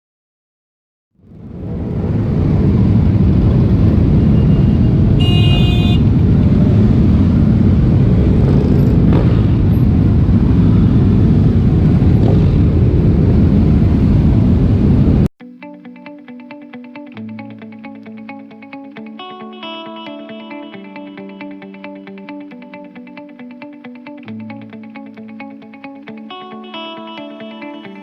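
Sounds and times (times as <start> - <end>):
motorcycle engines rumbling: 1.2 - 15.3
horn toot: 4.6 - 6.1.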